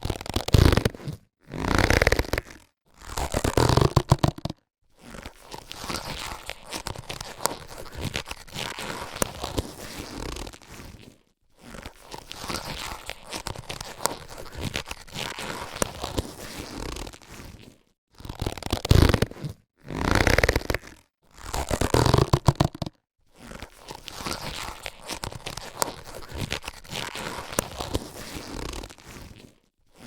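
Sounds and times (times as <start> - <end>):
latex gloves rubbing: 0.0 - 30.0.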